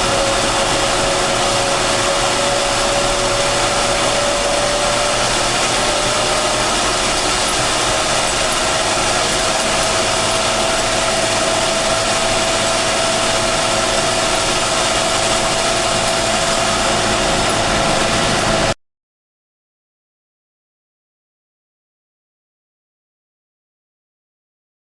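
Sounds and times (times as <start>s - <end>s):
tractor diesel engine under load: 0.0s - 18.8s.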